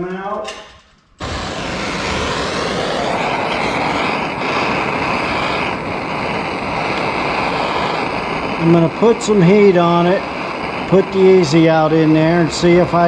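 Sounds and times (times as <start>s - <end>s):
electric drill whining: 0.9s - 8.8s.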